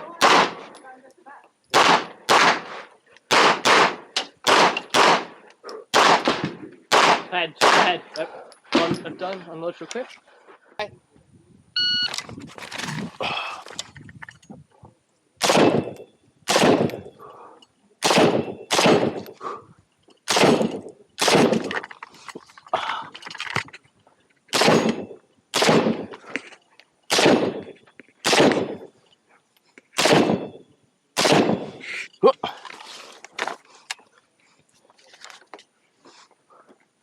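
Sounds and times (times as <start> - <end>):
gunshots with short echo: 0.2 - 0.7, 1.7 - 8.0, 15.4 - 17.1, 18.0 - 19.3, 20.3 - 21.7, 24.5 - 26.1, 27.1 - 28.9, 30.0 - 30.6, 31.2 - 31.8.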